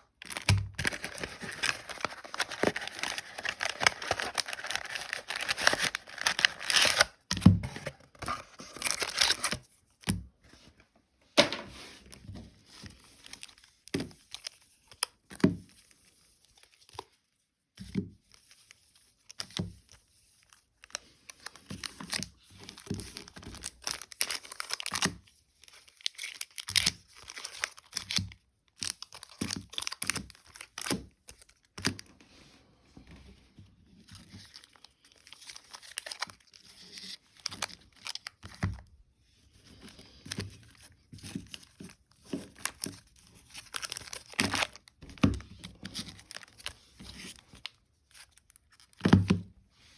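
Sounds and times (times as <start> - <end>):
foil and plastic wrap tearing: 0.0 - 9.6, 20.8 - 25.2, 25.9 - 31.8, 34.4 - 38.6, 40.0 - 49.0.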